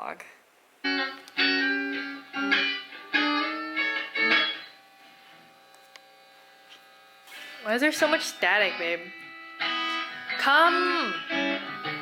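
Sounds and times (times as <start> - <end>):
plucked guitar notes and chords: 0.8 - 4.8, 7.3 - 12.0.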